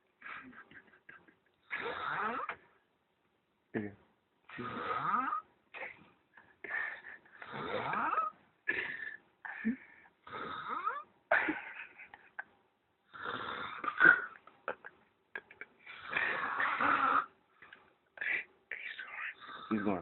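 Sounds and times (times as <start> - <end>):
man snoring with wheezing: 1.7 - 2.6, 4.5 - 5.4, 7.4 - 8.3, 10.2 - 11.0, 13.1 - 14.3, 15.9 - 17.3, 19.3 - 20.0.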